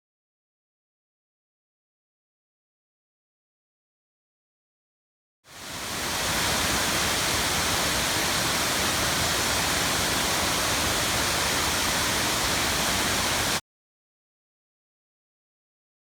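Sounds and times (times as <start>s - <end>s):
waterfall pouring: 5.6s - 13.6s.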